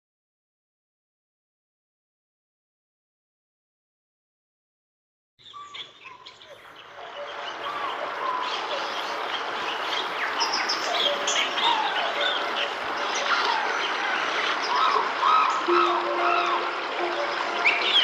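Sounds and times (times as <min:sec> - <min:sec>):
birdsong alarm tone: 0:05.4 - 0:18.0.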